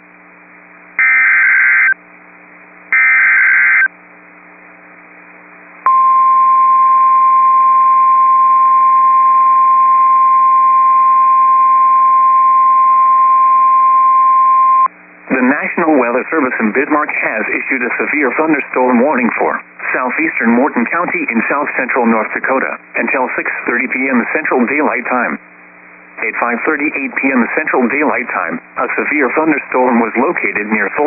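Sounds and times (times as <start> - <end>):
receiver hum and hiss: 0.0 - 31.0
buzzing data burst screeches: 1.0 - 2.0, 3.0 - 3.9
steady alarm tone: 1.0 - 2.0, 2.9 - 3.9.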